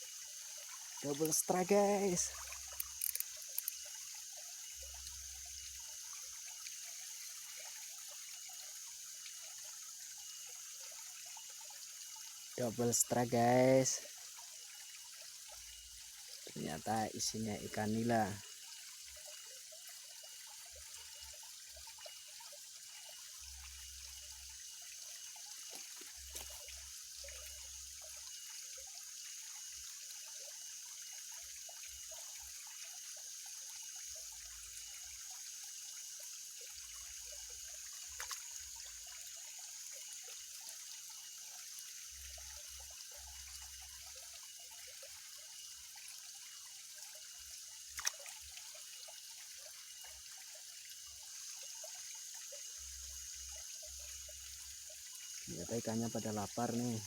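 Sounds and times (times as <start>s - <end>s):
water trickling with hiss: 0.0s - 57.0s
sharp clicks: 2.7s - 3.8s.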